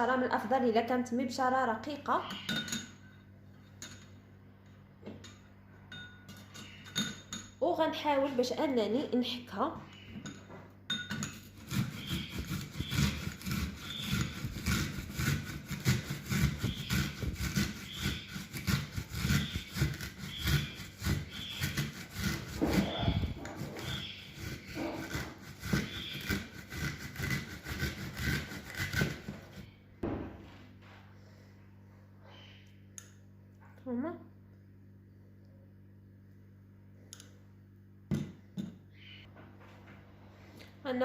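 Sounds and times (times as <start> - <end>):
onion grated on a grater: 11.2 - 29.7.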